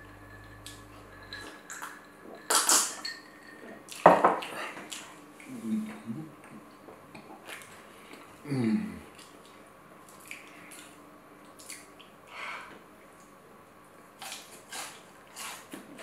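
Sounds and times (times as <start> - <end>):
cutlery clinking on a plate: 0.3 - 4.5.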